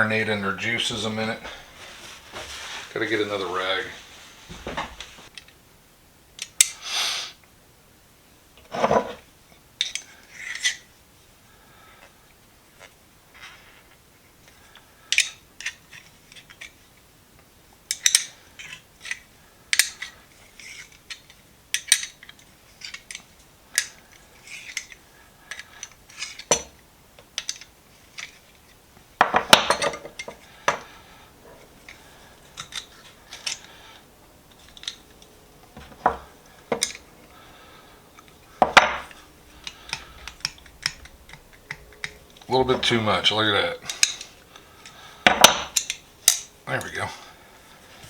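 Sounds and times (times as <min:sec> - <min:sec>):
tools rattling: 0:29.2 - 0:42.6, 0:43.8 - 0:46.6
metal tools clinking: 0:29.2 - 0:43.0, 0:43.8 - 0:46.5.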